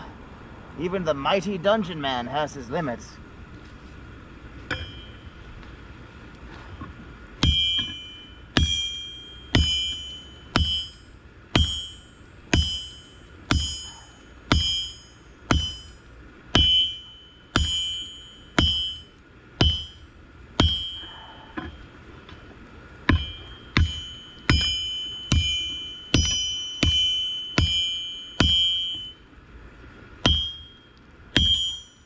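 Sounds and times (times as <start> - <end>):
hammer striking hot steel on anvil: 4.7 - 5.4, 7.4 - 21.9, 23.0 - 29.2, 30.2 - 32.0.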